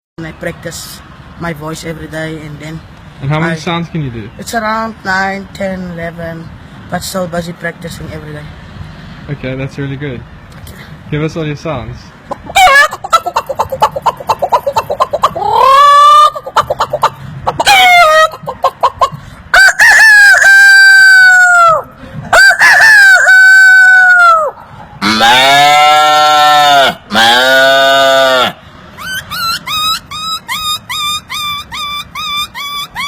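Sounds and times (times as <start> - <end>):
man imitating chicken clucks: 12.3 - 33.0
man imitating rooster crows: 15.4 - 16.4, 19.5 - 28.6
low drawn-out animal call: 24.3 - 33.0.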